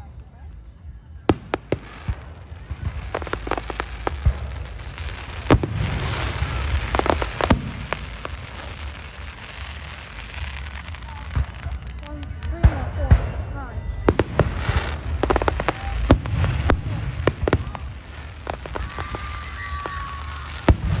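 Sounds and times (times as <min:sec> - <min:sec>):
firework crackling: 0:00.0 - 0:21.0
fireworks bangs: 0:00.0 - 0:21.0.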